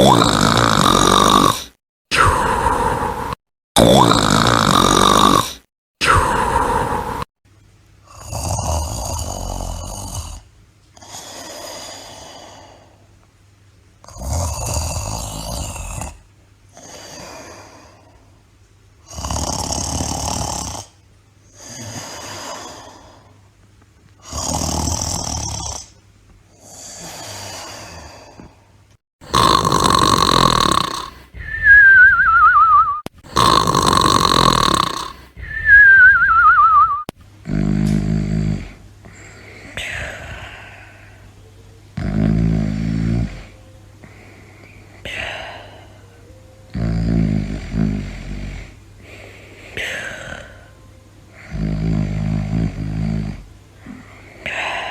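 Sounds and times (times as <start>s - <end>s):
person snoring: 0.0s - 7.3s, 8.0s - 13.0s, 14.0s - 18.2s, 19.1s - 23.4s, 24.2s - 41.2s, 42.0s - 44.2s, 46.7s - 54.9s
falling wavering whistle: 31.4s - 33.0s, 35.4s - 37.1s.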